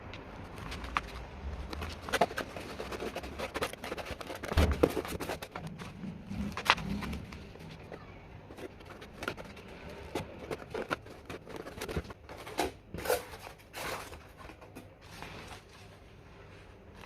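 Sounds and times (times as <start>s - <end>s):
rustling and scraping handling: 0.0s - 17.0s.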